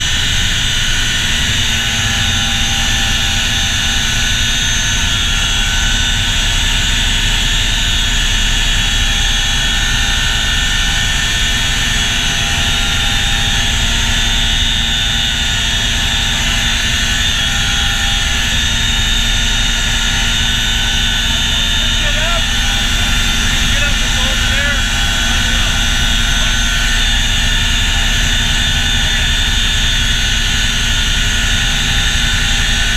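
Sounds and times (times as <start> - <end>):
helicopter turbine whine and rotors: 0.0 - 32.9.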